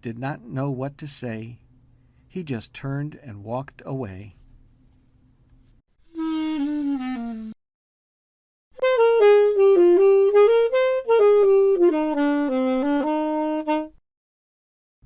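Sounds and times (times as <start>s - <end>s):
saxophone jazzy melody: 6.1s - 7.6s, 8.8s - 14.0s.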